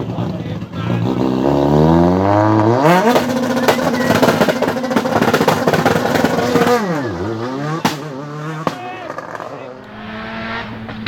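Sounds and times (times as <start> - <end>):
car engine revving high: 0.9 - 8.6, 9.8 - 11.0
sharp bang: 2.9 - 8.8.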